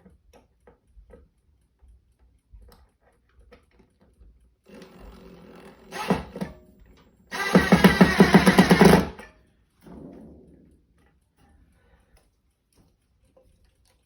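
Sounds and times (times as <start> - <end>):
power drill driving screw: 4.7 - 6.6, 7.3 - 9.3.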